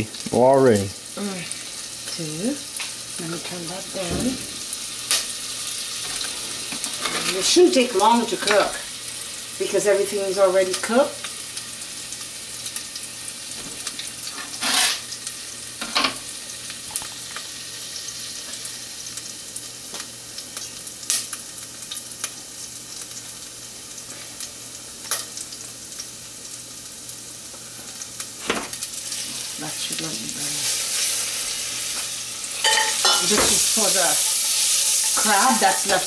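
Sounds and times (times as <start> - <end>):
food sizzling in a pan: 0.0 - 36.0
utensils knocking against pan: 32.6 - 33.6.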